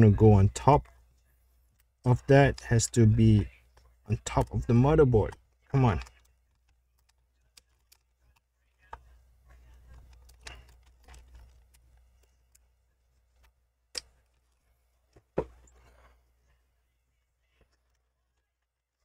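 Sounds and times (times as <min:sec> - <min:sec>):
faint handling noise: 0:03.3 - 0:19.0
small metal parts clicking: 0:10.0 - 0:12.6.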